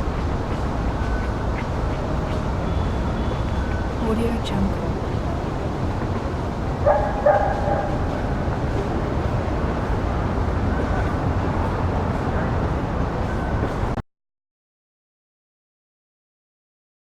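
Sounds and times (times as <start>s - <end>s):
distant traffic rumble: 0.0s - 14.0s
dog barking: 6.8s - 8.1s.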